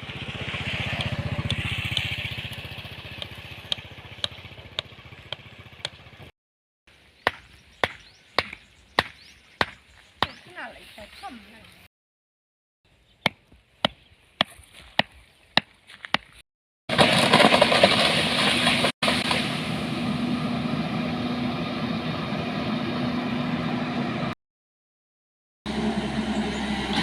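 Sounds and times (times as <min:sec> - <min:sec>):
engine running loudly: 0:00.0 - 0:06.3, 0:16.9 - 0:24.4, 0:25.7 - 0:27.0.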